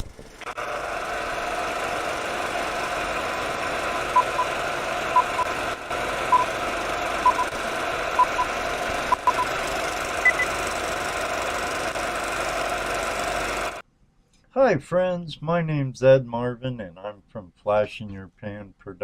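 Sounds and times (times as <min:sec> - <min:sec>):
short electronic beeps: 0:04.2 - 0:04.5, 0:05.2 - 0:05.5, 0:07.2 - 0:07.5, 0:08.2 - 0:08.5, 0:09.1 - 0:09.5, 0:10.2 - 0:10.5.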